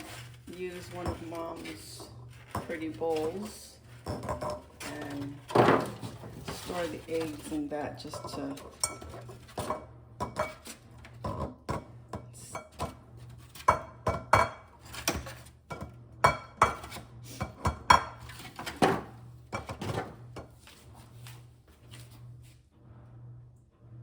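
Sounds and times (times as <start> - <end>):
eggs clinking in a bowl: 0.1 - 5.9, 8.0 - 10.6.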